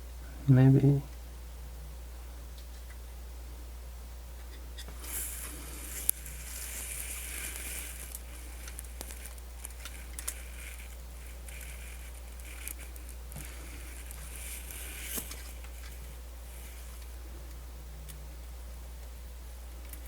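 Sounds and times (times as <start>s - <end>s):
steady low hum: 0.0s - 20.0s
small parts clicking and scraping: 4.4s - 17.1s.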